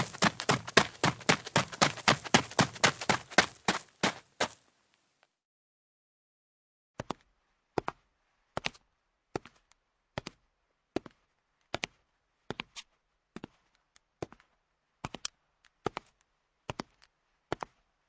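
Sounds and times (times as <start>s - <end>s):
slow clicking footsteps: 0.0s - 4.6s.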